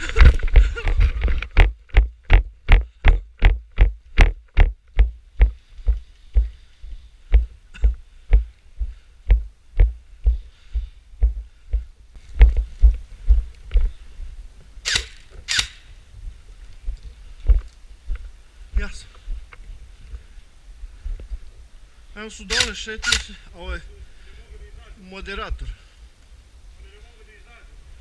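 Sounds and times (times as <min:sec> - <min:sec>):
footsteps thumping: 0:00.0 - 0:13.9.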